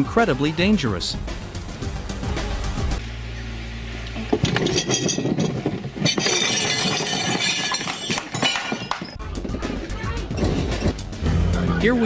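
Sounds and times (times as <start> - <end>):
vehicle engine running: 1.2 - 6.0
clatter of knocks and rattles: 4.3 - 9.8.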